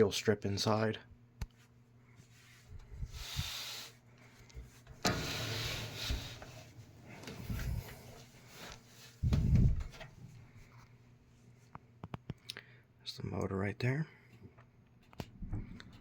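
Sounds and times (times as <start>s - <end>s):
box fan rubbing and scraping: 2.6s - 4.0s, 4.9s - 10.0s.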